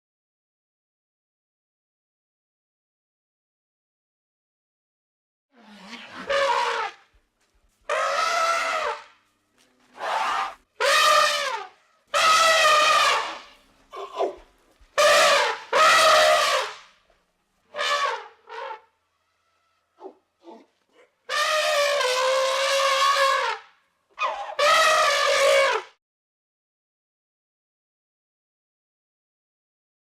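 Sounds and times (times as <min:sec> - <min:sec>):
elephant trumpeting: 0:05.6 - 0:07.0, 0:07.9 - 0:09.2, 0:09.9 - 0:14.4, 0:15.0 - 0:16.8, 0:17.7 - 0:23.6, 0:24.2 - 0:25.9.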